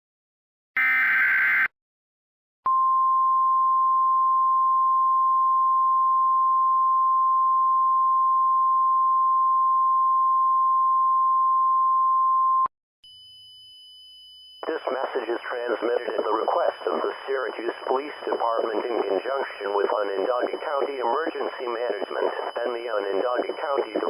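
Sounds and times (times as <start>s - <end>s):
steady warning alarm tone: 13.1s - 24.0s.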